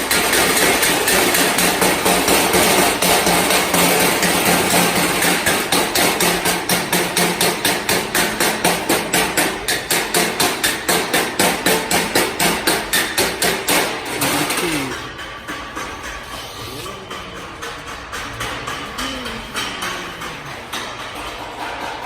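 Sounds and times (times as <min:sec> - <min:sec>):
stick welding pulsing noise: 0:00.0 - 0:22.0.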